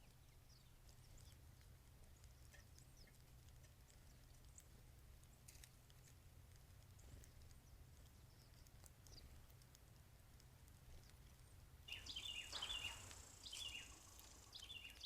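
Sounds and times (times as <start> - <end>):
steady low hum: 10.2 - 15.0
bird calls: 11.9 - 15.0.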